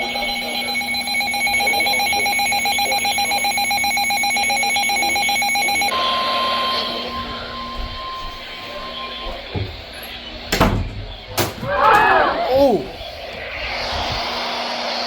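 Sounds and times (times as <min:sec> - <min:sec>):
alarm beeping rapidly: 0:00.0 - 0:10.2
steady high alarm tone: 0:00.0 - 0:14.2.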